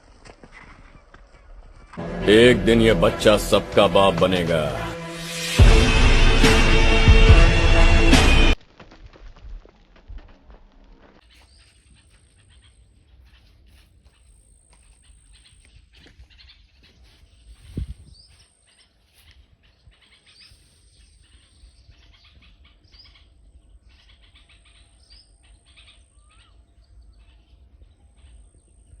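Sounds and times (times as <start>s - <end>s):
high thin tone: 2.0s - 8.6s
small birds chirping: 11.2s - 29.0s.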